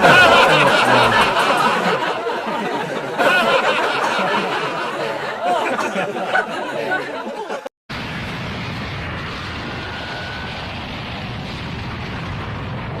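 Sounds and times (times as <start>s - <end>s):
explosion rumble: 7.9s - 13.0s.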